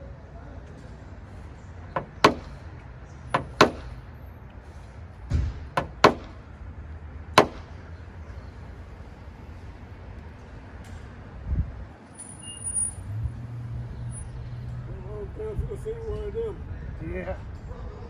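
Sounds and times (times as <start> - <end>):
sharp knocks: 2.0 - 2.6, 3.3 - 4.0, 5.3 - 6.4, 7.4 - 7.8.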